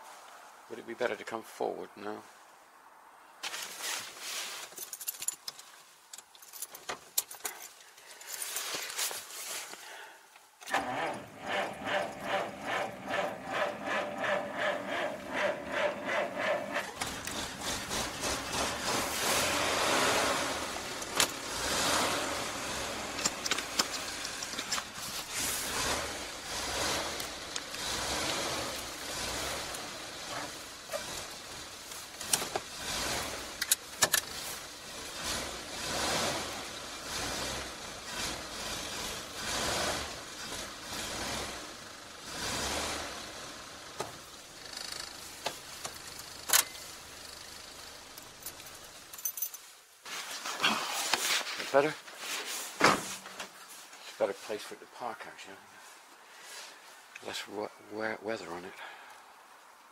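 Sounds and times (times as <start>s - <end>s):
starter motor cranking engine: 10.6s - 30.0s, 35.1s - 48.2s
engine running: 10.7s - 48.8s.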